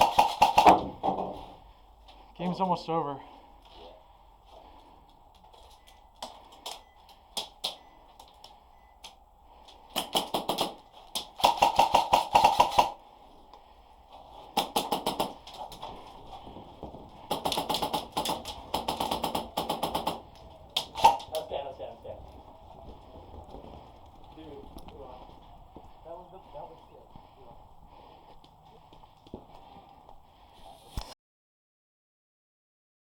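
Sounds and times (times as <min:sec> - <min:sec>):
airsoft guns firing: 0:00.0 - 0:01.6, 0:05.7 - 0:08.4, 0:09.0 - 0:13.4, 0:14.2 - 0:30.2.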